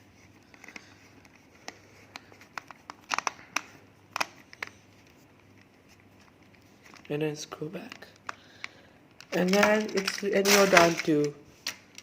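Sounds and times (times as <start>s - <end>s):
aluminium foil crinkling: 8.2s - 12.0s.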